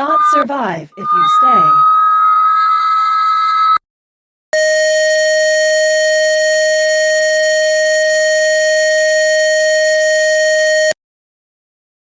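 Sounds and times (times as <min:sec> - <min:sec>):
buzzy electronic alert tone: 0:00.0 - 0:03.8.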